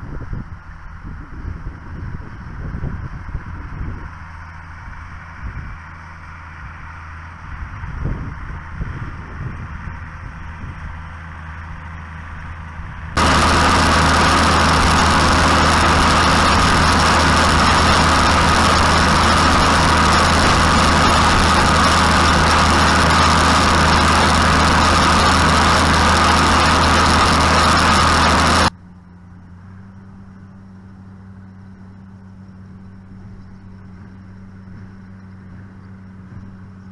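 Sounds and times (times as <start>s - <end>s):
tractor engine running: 13.2s - 28.7s.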